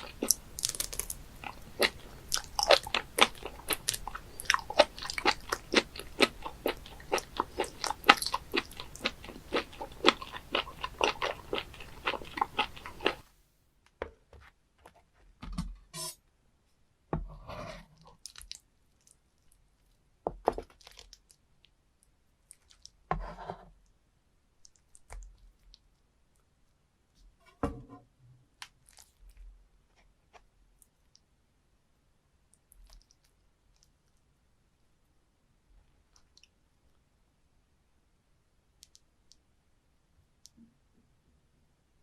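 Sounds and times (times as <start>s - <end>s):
close chewing with mouth clicks: 0.0s - 13.3s, 22.4s - 23.0s.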